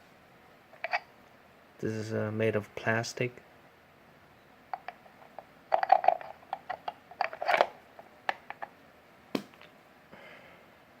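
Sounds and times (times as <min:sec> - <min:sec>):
plastic parts clicking and rattling: 0:04.8 - 0:08.7.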